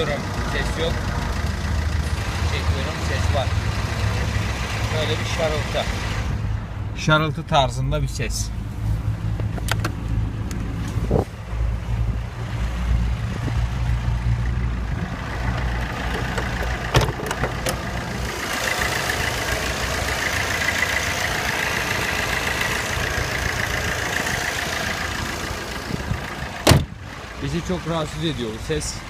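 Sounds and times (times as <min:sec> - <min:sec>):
diesel engine idling: 0:00.0 - 0:07.4, 0:08.5 - 0:29.0
rushing rattling whirr: 0:09.5 - 0:28.1.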